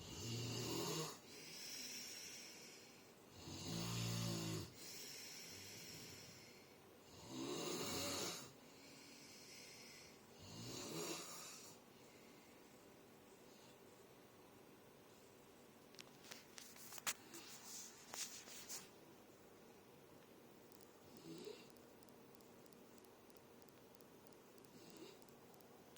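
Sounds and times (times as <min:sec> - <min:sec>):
person snoring: 0:00.0 - 0:11.8.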